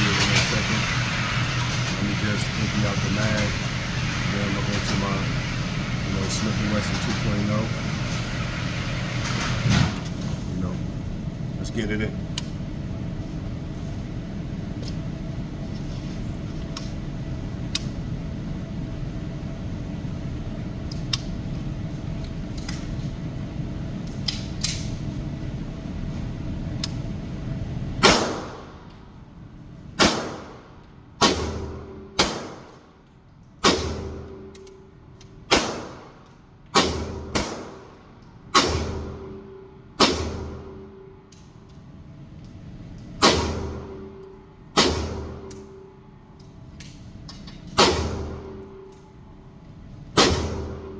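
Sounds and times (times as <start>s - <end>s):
echoing gunshots: 28.0s - 28.8s, 30.0s - 32.8s, 33.6s - 34.5s, 35.5s - 36.2s, 36.8s - 37.9s, 38.5s - 39.4s, 40.0s - 40.8s, 43.2s - 44.0s, 44.8s - 45.5s, 50.2s - 50.9s.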